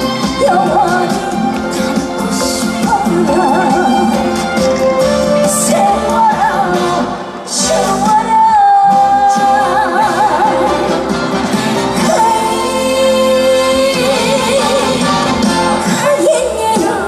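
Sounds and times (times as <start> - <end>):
woman singing: 0.0 - 11.2, 11.9 - 17.0
band accompaniment: 0.0 - 17.0.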